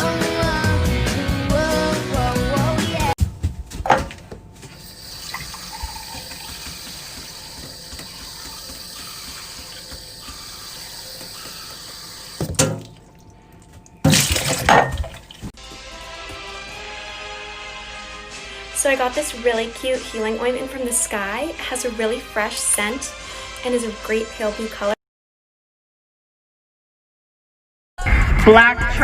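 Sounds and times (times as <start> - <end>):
music: 0.0 - 4.0, 5.9 - 12.7, 15.6 - 25.0, 28.0 - 29.0.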